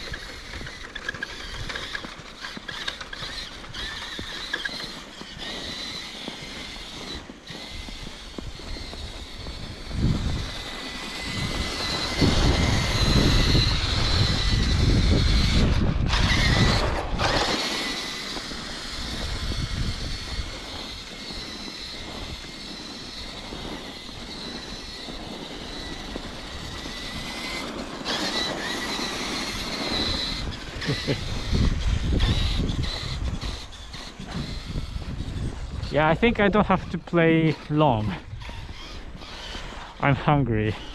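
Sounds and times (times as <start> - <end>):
toy truck motor whining: 0.0 - 40.9.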